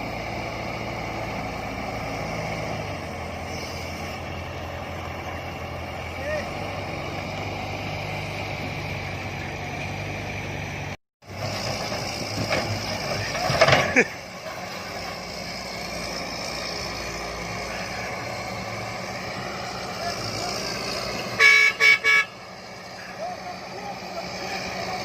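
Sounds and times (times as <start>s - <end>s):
heavy machine engine running: 0.0s - 25.0s
vehicle horn toots: 21.3s - 22.4s.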